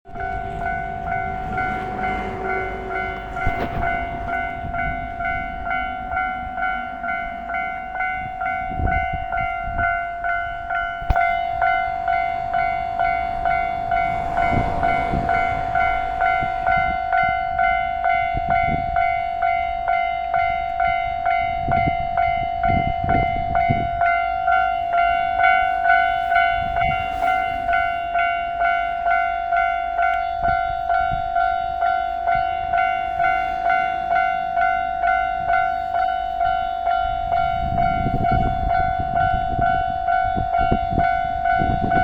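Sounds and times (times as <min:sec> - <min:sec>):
level crossing alarm dinging: 0:00.1 - 0:42.0
train wheels thumping over rails: 0:00.5 - 0:04.9.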